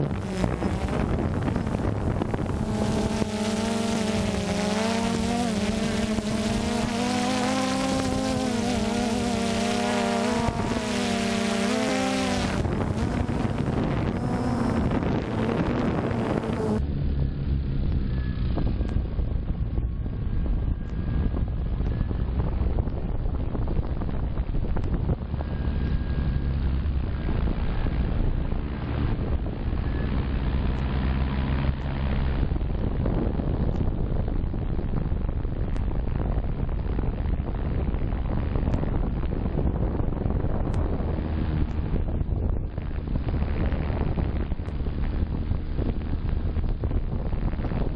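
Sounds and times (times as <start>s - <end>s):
drone propellers whirring: 0.0s - 47.9s
wind buffeting microphone: 0.0s - 47.9s.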